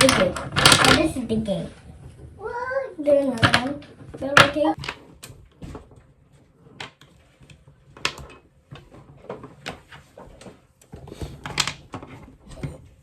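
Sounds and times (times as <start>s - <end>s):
plastic cubes clicking: 0.0s - 1.3s, 3.2s - 5.4s, 10.8s - 12.3s.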